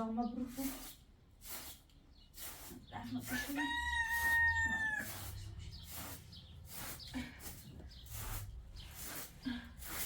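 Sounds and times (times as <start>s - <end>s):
rooster crowing: 3.5s - 5.2s.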